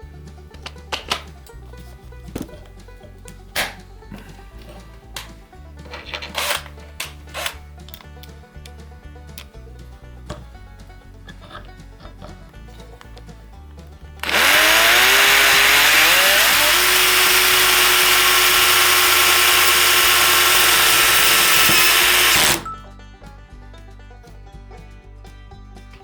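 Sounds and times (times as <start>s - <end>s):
quiet background music: 0.0s - 21.1s, 21.9s - 26.0s
power tool motor spinning: 6.0s - 7.6s, 14.2s - 22.7s.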